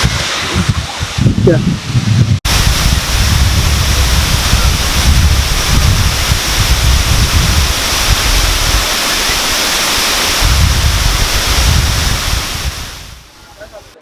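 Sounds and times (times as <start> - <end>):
wind buffeting the microphone: 0.0 - 13.9
water pouring over a spillway: 2.5 - 13.0.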